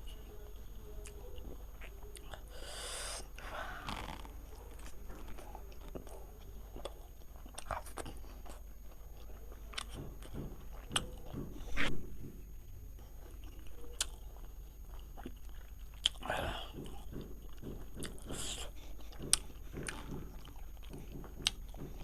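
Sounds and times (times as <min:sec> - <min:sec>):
person chewing and eating: 0:01.0 - 0:12.3, 0:13.0 - 0:22.0
crunches and mouth clicks: 0:01.8 - 0:06.2, 0:13.3 - 0:22.0.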